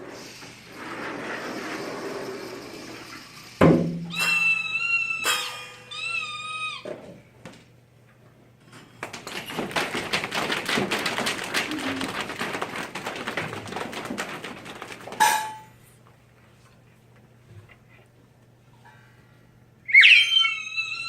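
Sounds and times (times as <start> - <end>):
quick irregular taps and clatters: 8.8 - 16.2.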